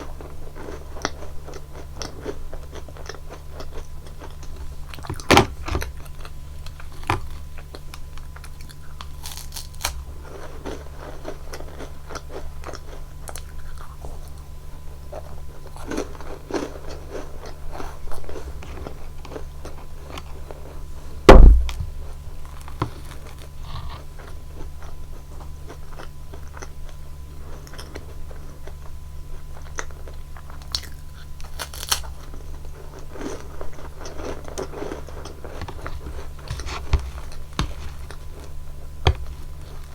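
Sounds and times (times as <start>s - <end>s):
crunching and chewing biscuits: 0.0s - 39.9s
loud thump: 21.3s - 22.0s, 39.1s - 39.4s.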